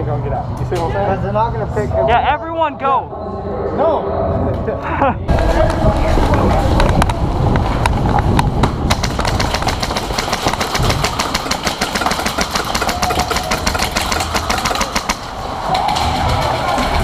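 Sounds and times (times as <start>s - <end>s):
airsoft guns firing full auto: 8.9s - 17.0s.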